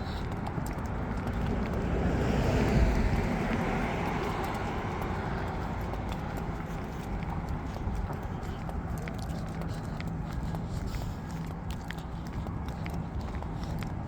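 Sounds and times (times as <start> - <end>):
wind rumble on microphone: 0.0 - 14.0
vehicle passing by: 0.4 - 8.2.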